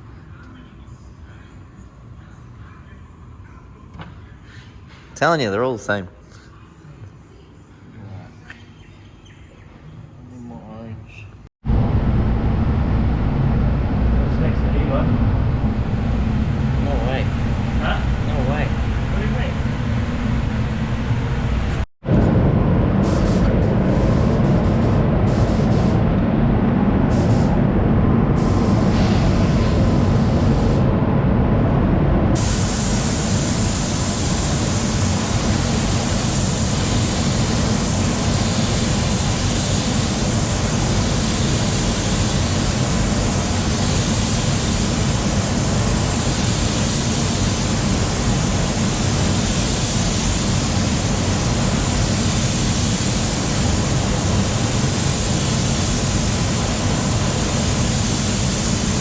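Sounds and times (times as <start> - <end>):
rushing air: 11.6 - 59.0
paint spray gun hissing: 23.0 - 26.0, 28.4 - 30.8, 32.4 - 59.0.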